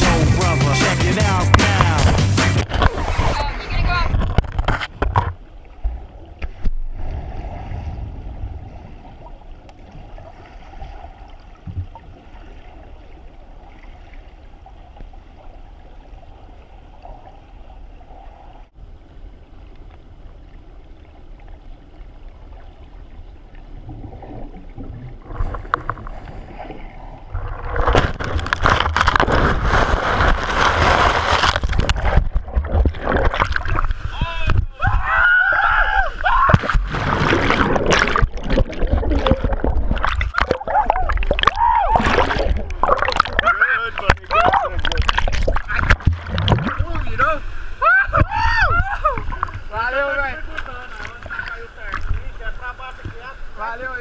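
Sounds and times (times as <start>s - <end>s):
loud splashing water: 0.0s - 4.4s, 24.2s - 35.0s, 36.2s - 47.2s
muffled underwater rushing water: 0.0s - 54.0s.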